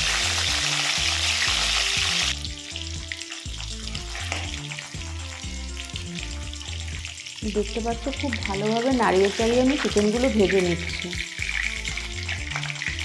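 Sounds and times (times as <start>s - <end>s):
chicken deep-frying in oil: 0.0s - 13.0s
music with bass line: 0.0s - 13.0s
stirring clicks: 6.9s - 13.0s.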